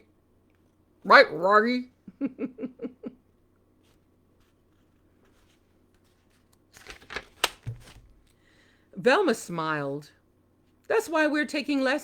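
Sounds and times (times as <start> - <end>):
book page turning: 3.8 - 8.4.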